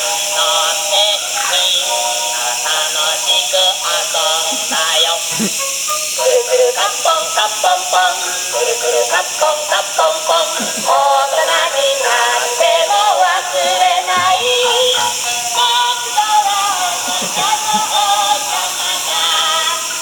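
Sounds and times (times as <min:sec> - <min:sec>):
steady high hiss: 0:00.0 - 0:20.0.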